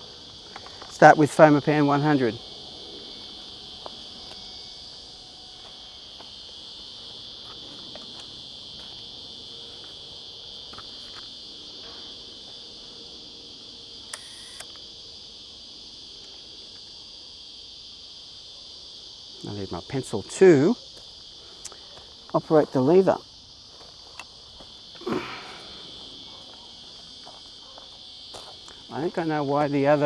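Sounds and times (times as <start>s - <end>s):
insects chirring: 0.0s - 30.0s.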